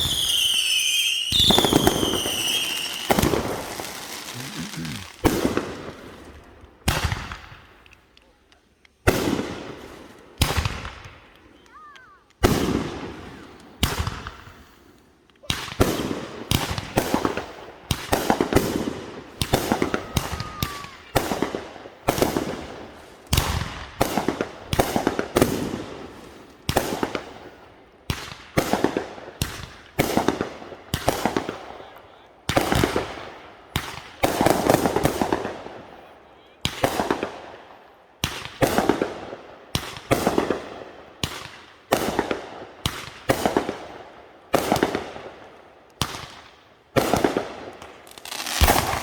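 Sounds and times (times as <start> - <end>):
fireworks banging: 0.0 - 6.2.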